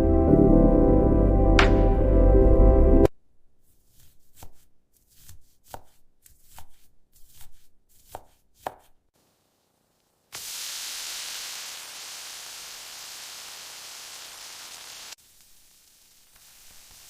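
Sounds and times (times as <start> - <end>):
background music: 0.0 - 3.1
knife chopping on cutting board: 3.9 - 9.0.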